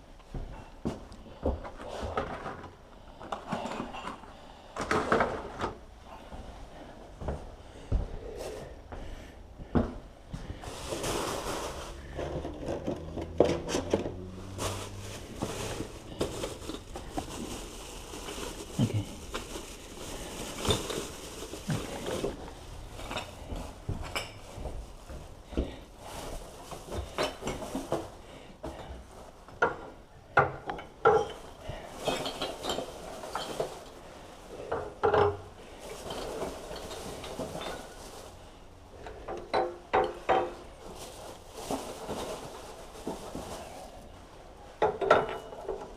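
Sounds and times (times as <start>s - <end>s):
household objects clattering: 1.7s - 5.9s, 9.8s - 38.4s.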